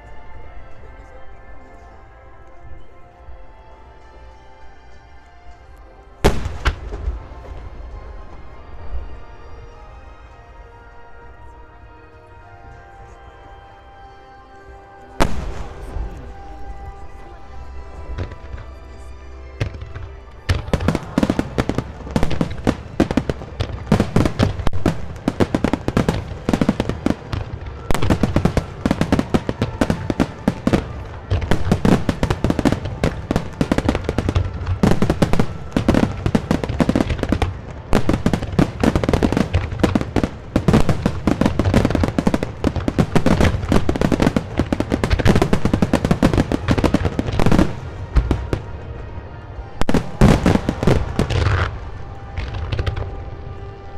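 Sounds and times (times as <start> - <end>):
music: 0.0 - 53.9
fireworks crackling bangs: 6.2 - 8.7, 19.6 - 49.2, 49.8 - 53.9
deep fireworks booms: 6.2 - 9.3, 15.2 - 17.2, 19.6 - 53.9.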